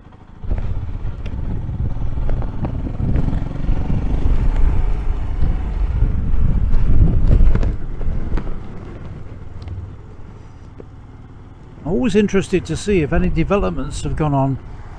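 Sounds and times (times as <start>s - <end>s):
motorcycle engine running: 0.0s - 14.9s
wind on microphone: 0.4s - 9.9s.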